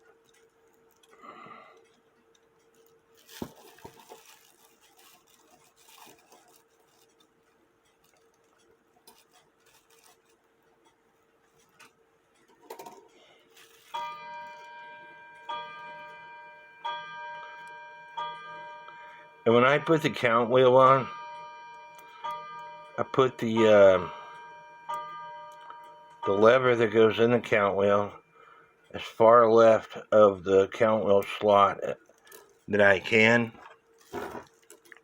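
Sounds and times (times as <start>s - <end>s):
faint clicks of clock parts: 0.0s - 3.2s, 6.8s - 13.3s
clock striking: 13.9s - 28.2s.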